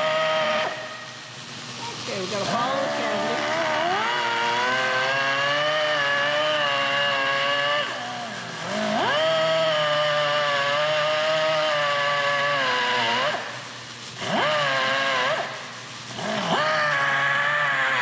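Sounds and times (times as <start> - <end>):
power drill motor whining: 0.0 - 0.8, 2.5 - 13.6.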